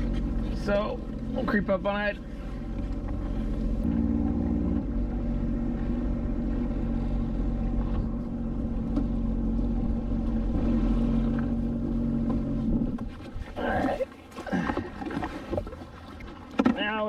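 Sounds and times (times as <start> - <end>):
jet ski engine running: 0.0 - 17.0.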